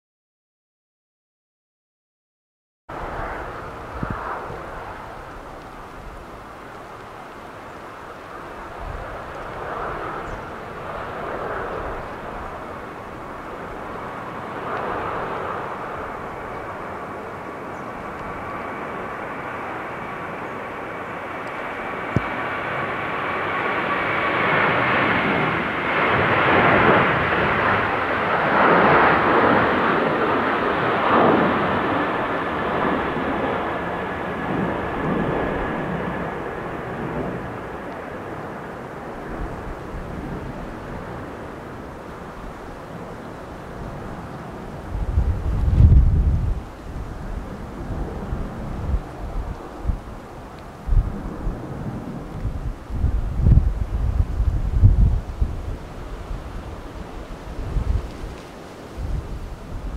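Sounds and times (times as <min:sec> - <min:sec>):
wind buffeting microphone: 0:02.9 - 0:19.2, 0:39.0 - 0:59.9
jet engines whining and roaring: 0:02.9 - 0:59.9.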